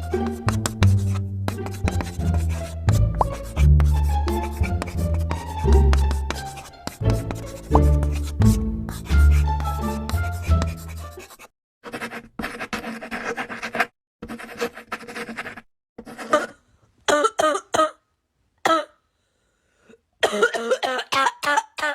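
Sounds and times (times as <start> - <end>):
person coughing: 16.2 - 18.0, 18.7 - 19.0, 20.2 - 21.9.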